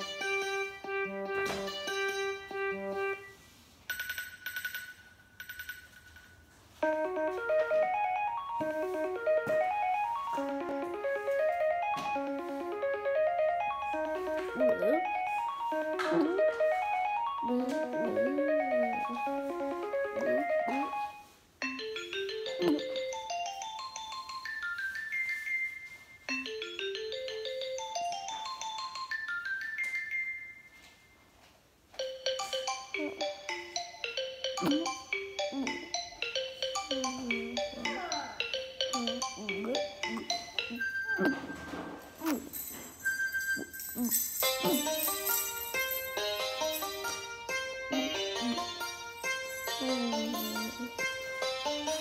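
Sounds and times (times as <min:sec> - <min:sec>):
plucked guitar-like ringtone: 0:06.8 - 0:23.6, 0:32.0 - 0:42.0.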